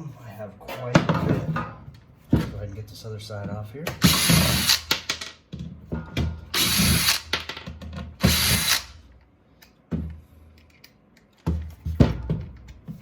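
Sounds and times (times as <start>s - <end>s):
clicks and knocks of screws: 10.5s - 11.5s.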